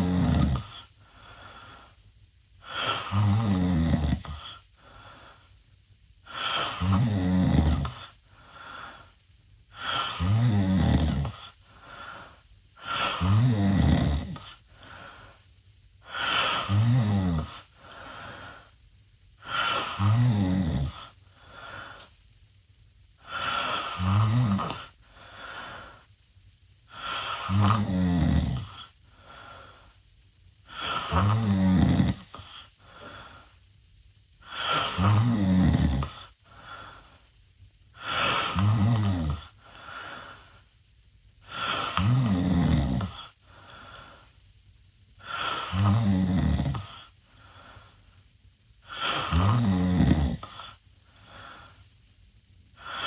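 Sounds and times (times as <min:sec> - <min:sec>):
boy snoring loudly: 0:00.0 - 0:00.9, 0:02.6 - 0:04.6, 0:06.3 - 0:08.2, 0:09.8 - 0:11.6, 0:12.8 - 0:14.6, 0:16.0 - 0:17.8, 0:19.4 - 0:21.2, 0:23.2 - 0:25.0, 0:26.9 - 0:28.9, 0:30.7 - 0:32.6, 0:34.4 - 0:36.3, 0:38.0 - 0:39.6, 0:41.5 - 0:43.4, 0:45.2 - 0:47.1, 0:48.8 - 0:50.8
faint breath: 0:00.8 - 0:03.1, 0:04.5 - 0:06.7, 0:08.1 - 0:10.1, 0:11.5 - 0:13.2, 0:14.5 - 0:16.7, 0:17.6 - 0:20.0, 0:21.1 - 0:22.2, 0:24.9 - 0:26.2, 0:28.8 - 0:31.0, 0:32.4 - 0:33.7, 0:36.2 - 0:37.4, 0:39.4 - 0:42.0, 0:43.3 - 0:44.5, 0:46.8 - 0:49.3, 0:50.4 - 0:52.1.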